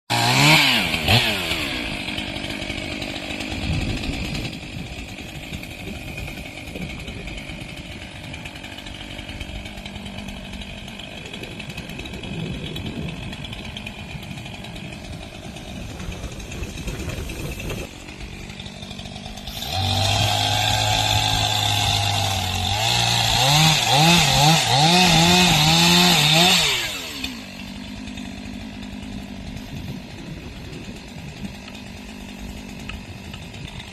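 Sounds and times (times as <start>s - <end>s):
chainsaw idling and revving: 0.1s - 33.9s.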